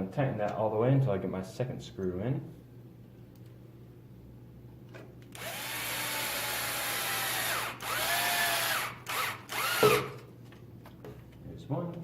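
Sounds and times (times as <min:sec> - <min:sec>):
electric screwdriver motor whine: 0:05.3 - 0:10.2.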